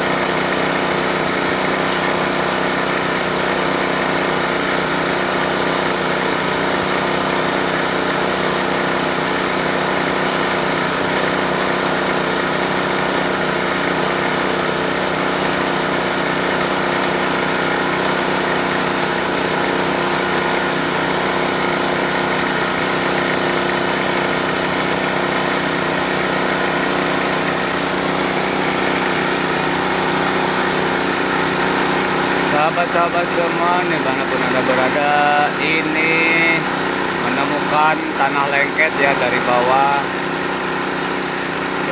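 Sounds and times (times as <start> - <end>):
small engine running steadily: 0.0 - 41.9.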